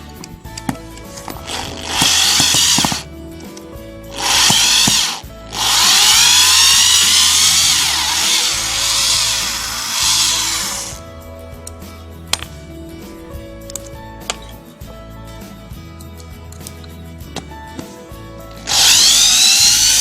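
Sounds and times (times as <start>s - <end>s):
power screwdriver drill running: 1.4s - 3.0s, 4.1s - 11.0s, 18.6s - 20.0s.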